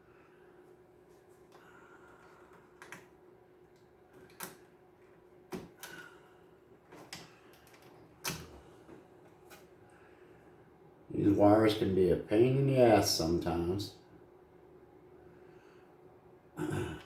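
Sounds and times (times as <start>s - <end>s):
faint steady hum: 0.0s - 17.0s
clicks and knocks of hands on parts: 2.2s - 4.7s.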